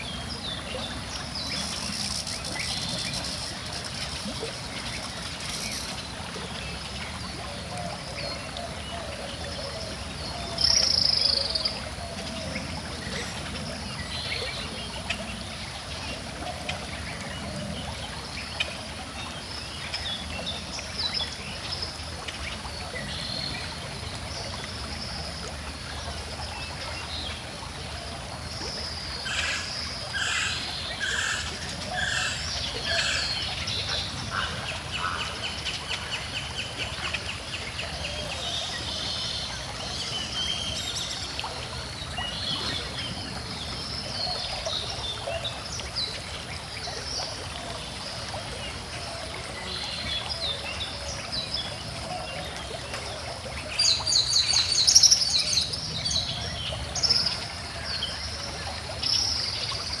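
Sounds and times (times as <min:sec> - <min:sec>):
stream trickling: 0:00.0 - 1:00.0
birds singing and chirping: 0:28.8 - 0:39.4.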